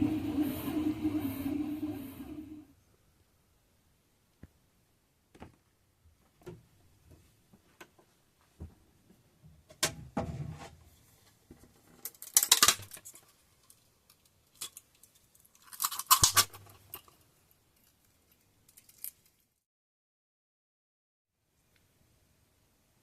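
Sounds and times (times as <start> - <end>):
small hard objects clicking: 12.0 - 19.5.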